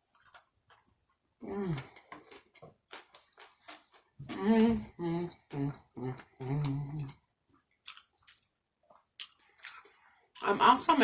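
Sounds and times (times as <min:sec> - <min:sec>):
woman chewing: 0:00.0 - 0:04.7, 0:06.2 - 0:10.4.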